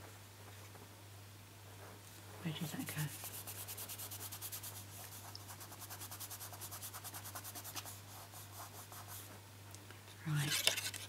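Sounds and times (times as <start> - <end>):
hand rubbing on paper: 2.5 - 9.4.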